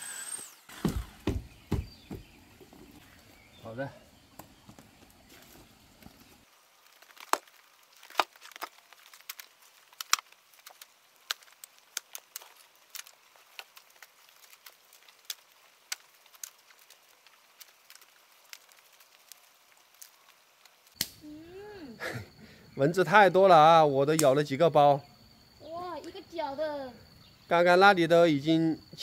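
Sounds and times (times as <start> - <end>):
twigs crackling and snapping: 4.3 - 21.2.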